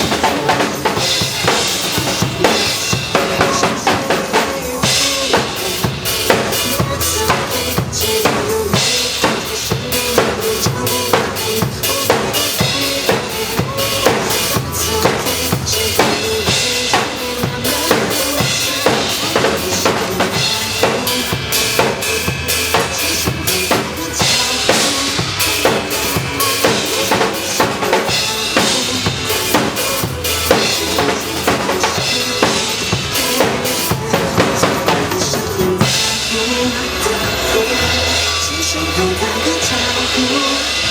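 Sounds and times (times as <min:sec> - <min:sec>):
drum kit groove: 0:00.0 - 0:40.9.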